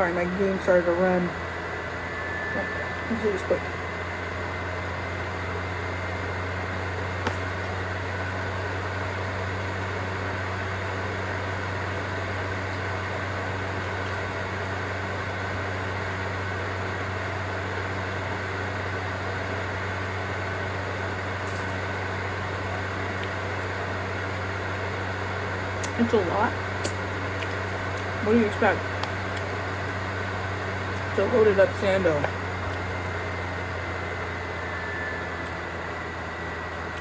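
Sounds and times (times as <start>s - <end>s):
machine hum: 0.0s - 37.0s
faint high tone: 1.6s - 3.9s.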